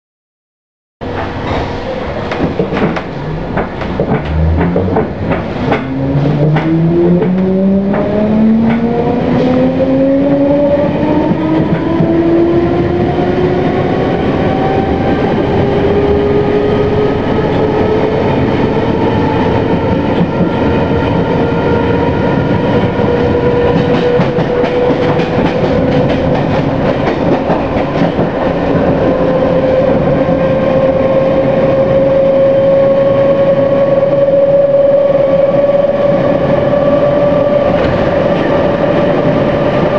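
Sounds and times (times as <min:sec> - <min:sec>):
rail rumble: 0:01.0 - 0:39.9.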